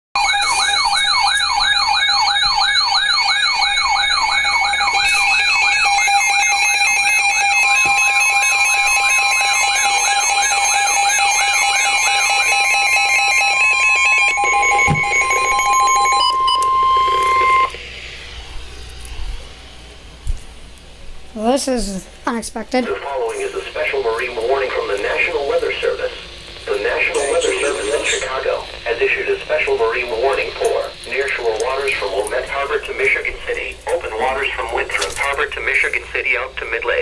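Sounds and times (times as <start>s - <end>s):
pulsing electronic beeping tones: 0.2s - 17.7s, 26.8s - 28.4s
fast warbling alarm siren: 0.2s - 17.8s, 23.4s - 32.8s
long steady alarm tone: 0.2s - 18.3s, 23.1s - 37.0s.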